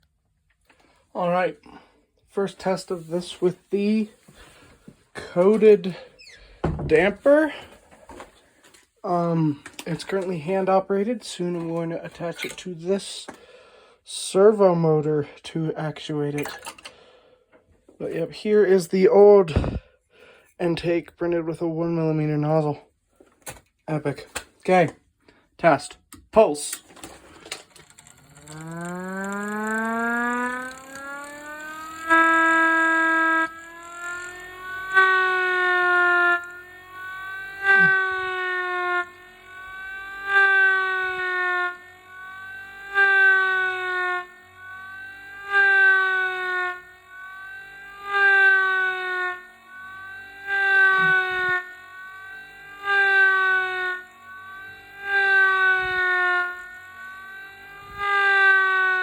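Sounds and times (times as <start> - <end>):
mini siren wailing: 27.8 - 59.0
siren blasts: 28.1 - 59.0.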